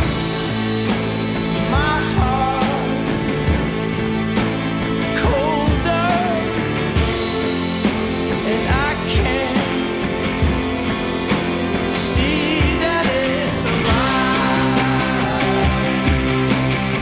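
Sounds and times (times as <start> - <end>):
rock music with singing: 0.0 - 17.0.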